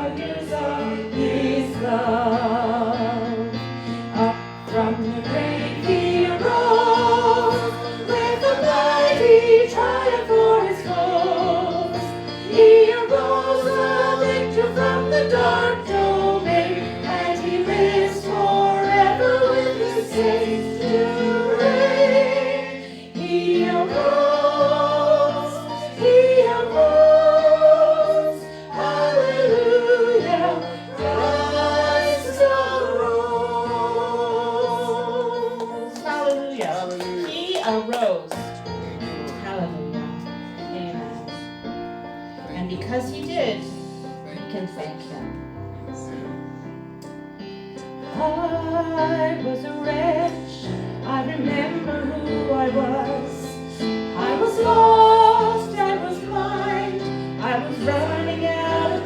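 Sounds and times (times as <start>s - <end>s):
choir singing with vibrato: 0.0s - 36.0s, 48.0s - 59.0s.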